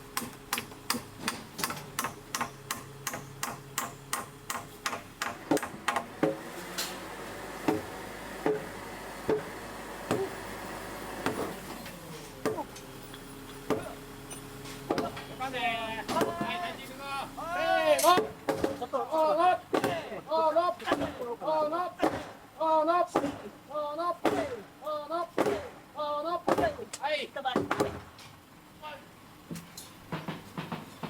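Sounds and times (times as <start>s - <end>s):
hammer striking timber: 0.1s - 6.6s, 7.6s - 10.4s, 11.2s - 11.6s, 12.4s - 12.8s, 13.6s - 14.0s, 14.9s - 15.3s, 16.1s - 16.6s, 18.0s - 19.0s, 19.7s - 20.2s, 20.8s - 21.3s, 22.0s - 22.4s, 23.1s - 23.5s, 24.2s - 24.6s, 25.4s - 25.8s, 26.4s - 27.0s, 27.6s - 28.1s.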